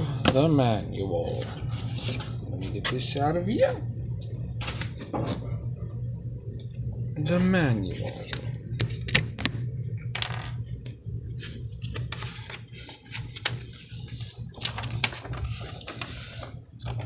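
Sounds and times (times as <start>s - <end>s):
steady low hum: 0.0s - 17.0s
paper pages rustling: 1.3s - 3.0s, 11.4s - 17.0s.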